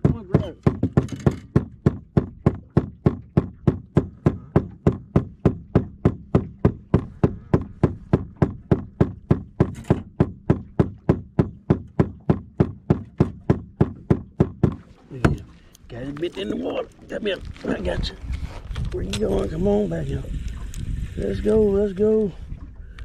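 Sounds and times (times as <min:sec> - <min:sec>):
rhythmic knocking: 0:00.0 - 0:15.5.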